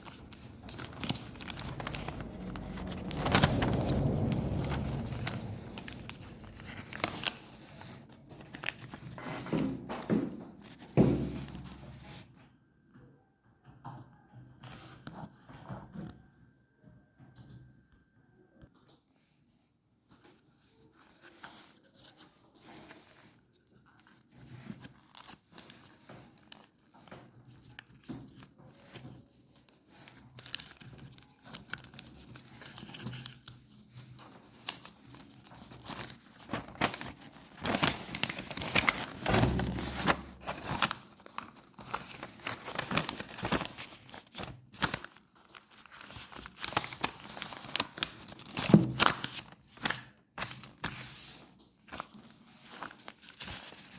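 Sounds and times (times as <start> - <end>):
paper crinkling and tearing: 0.0 - 9.7, 20.4 - 53.9.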